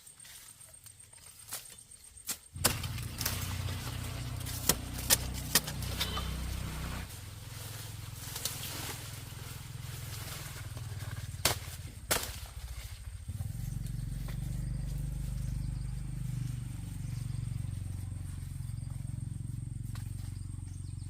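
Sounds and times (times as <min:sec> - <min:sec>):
motor humming: 0:02.6 - 0:12.4.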